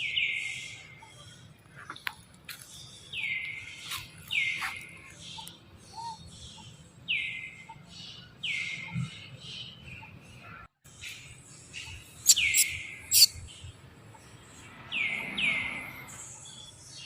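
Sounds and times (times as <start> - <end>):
baby monkey calling: 4.5 - 6.7, 11.8 - 13.4.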